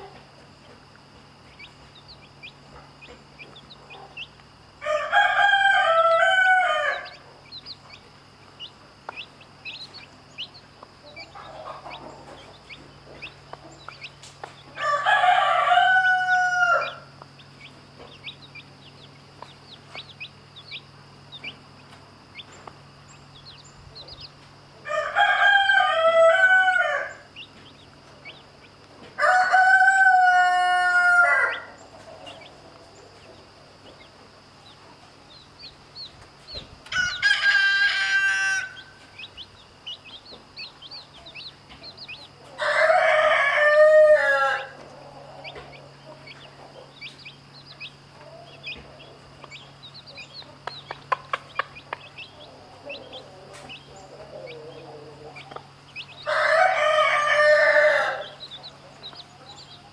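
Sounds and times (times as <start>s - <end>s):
chicks peeping: 0.0s - 59.9s
rooster crowing: 4.8s - 7.2s, 14.7s - 17.2s, 24.8s - 27.4s, 29.2s - 31.8s, 36.9s - 39.3s, 41.9s - 45.9s, 52.1s - 59.7s.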